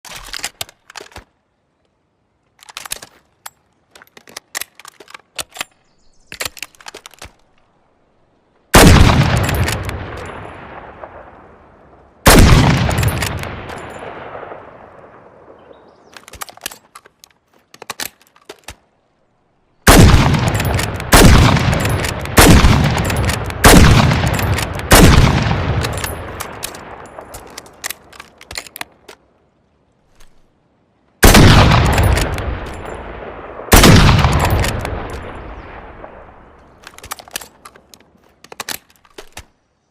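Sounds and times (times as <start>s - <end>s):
rifle bolt clicks and rattles: 0.0s - 1.4s, 2.4s - 7.7s, 9.3s - 10.4s, 12.8s - 14.1s, 16.1s - 19.1s, 20.3s - 29.4s, 30.1s - 30.5s, 31.2s - 33.0s, 33.8s - 35.3s, 36.6s - 39.6s
rifle shots with rolling echo: 8.7s - 15.8s, 19.9s - 28.1s, 31.2s - 37.7s.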